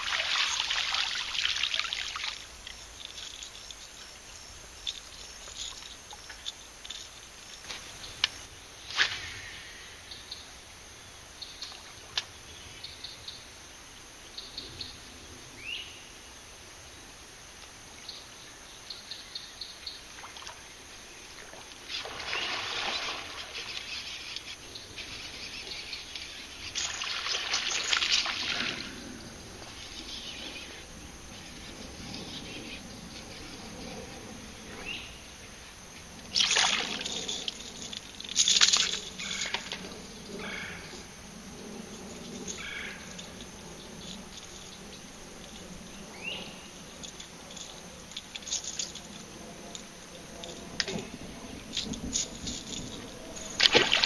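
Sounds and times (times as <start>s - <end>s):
water splashing: 0.0s - 3.8s, 21.4s - 24.5s, 26.6s - 29.0s, 36.3s - 39.8s, 53.4s - 54.0s.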